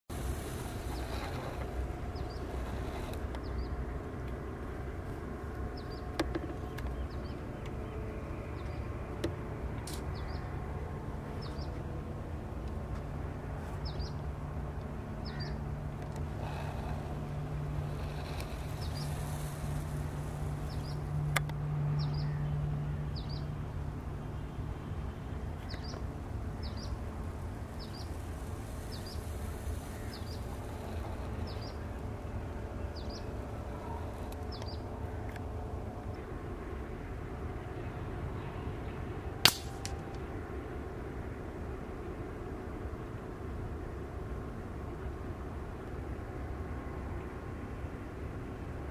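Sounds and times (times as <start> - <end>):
small bird chirping: 0.1 - 3.8, 16.4 - 21.1, 27.7 - 32.0
low steady hum: 0.1 - 48.9
air rifle shots: 39.4 - 40.0.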